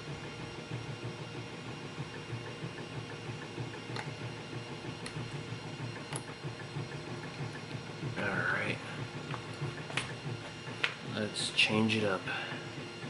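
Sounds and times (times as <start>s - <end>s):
stepper motor pulsing hum: 0.0s - 13.0s.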